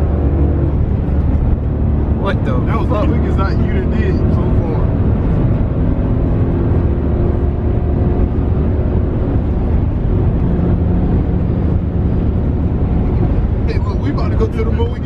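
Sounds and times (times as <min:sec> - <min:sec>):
vehicle engine and road noise: 0:00.0 - 0:15.0.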